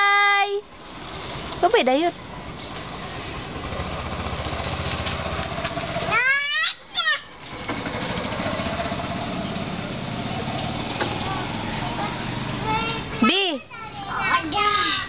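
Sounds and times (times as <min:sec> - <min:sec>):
engine rumble: 0:00.6 - 0:15.0
child squealing: 0:06.1 - 0:07.3.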